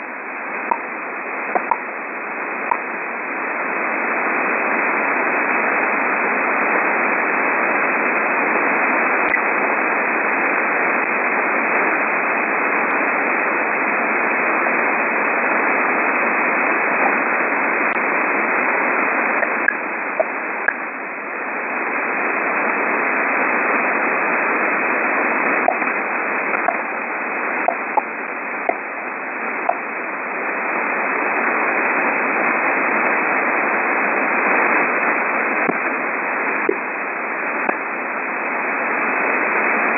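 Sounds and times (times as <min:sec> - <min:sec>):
shortwave radio static: 0:00.0 - 0:39.9
short radio pips: 0:00.7 - 0:02.0, 0:09.2 - 0:09.6, 0:19.3 - 0:20.8, 0:25.6 - 0:29.9.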